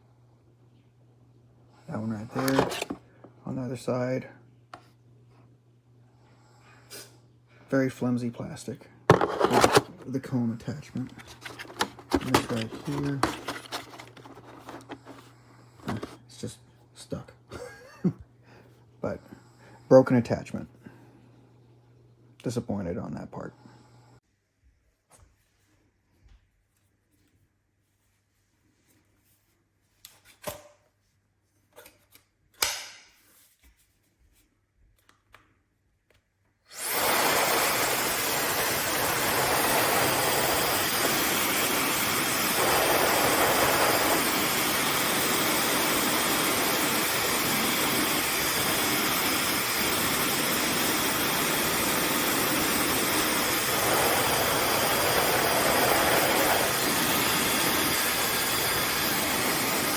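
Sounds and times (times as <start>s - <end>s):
hair dryer blowing air: 2.3s - 3.0s, 36.7s - 59.9s.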